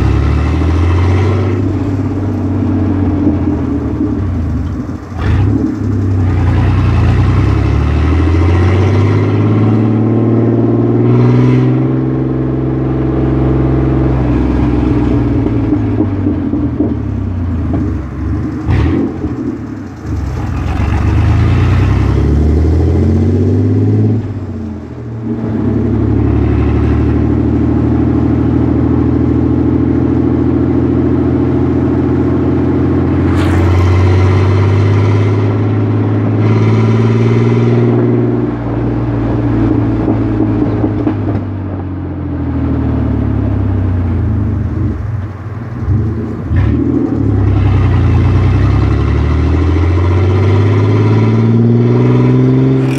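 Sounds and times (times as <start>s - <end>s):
car engine accelerating through gears: 0.0s - 52.9s.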